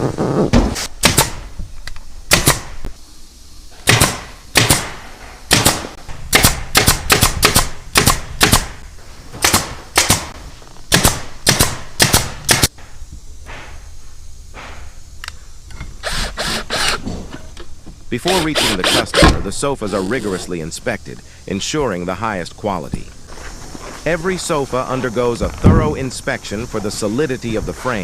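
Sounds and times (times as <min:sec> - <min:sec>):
pneumatic nail gun firing: 0:00.5 - 0:01.5, 0:02.3 - 0:02.9, 0:03.8 - 0:08.8, 0:09.4 - 0:12.9, 0:15.8 - 0:17.3, 0:18.2 - 0:20.4.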